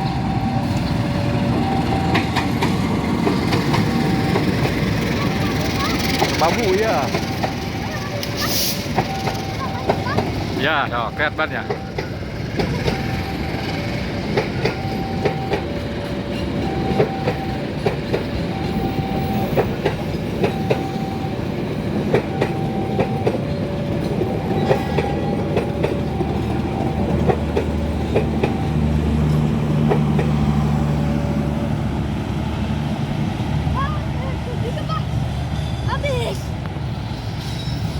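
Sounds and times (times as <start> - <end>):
two-tone warning signal: 0.0 - 2.4, 3.7 - 29.4
train wheels clicking on rails: 0.0 - 34.0.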